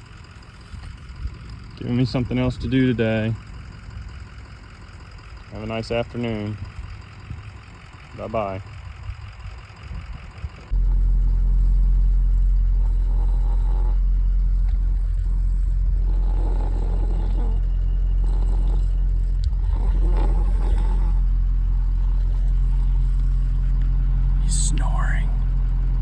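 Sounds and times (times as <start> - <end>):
vehicle engine idling: 0.0 - 26.0
animal snoring: 10.8 - 25.2.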